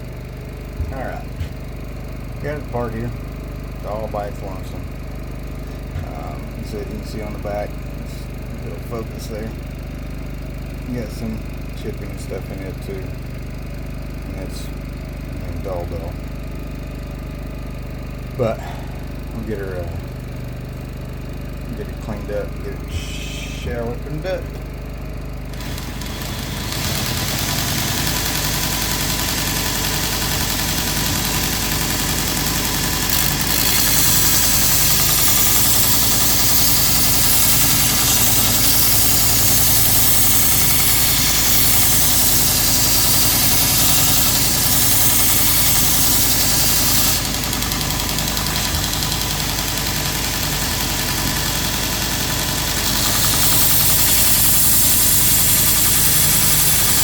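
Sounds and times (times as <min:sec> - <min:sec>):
belt grinder motor hum: 0:00.0 - 0:57.0
high grinding hiss: 0:21.8 - 0:24.4, 0:25.5 - 0:57.0.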